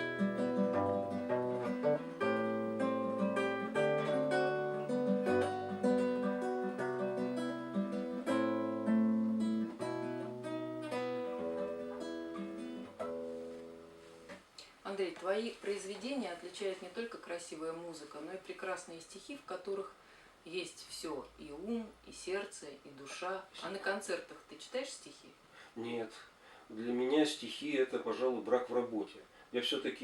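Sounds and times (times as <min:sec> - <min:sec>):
acoustic guitar strumming: 0:00.0 - 0:14.3.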